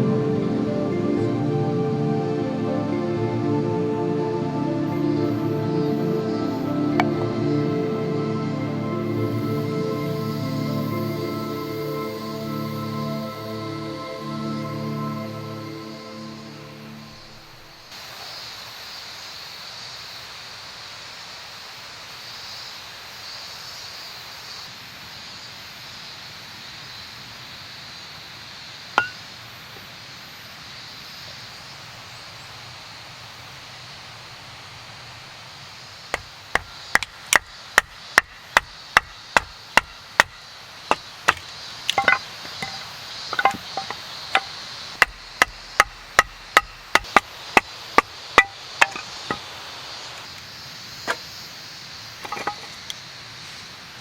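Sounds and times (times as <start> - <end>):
outdoor hiss: 0.0 - 54.0
blade chopping: 36.2 - 49.4.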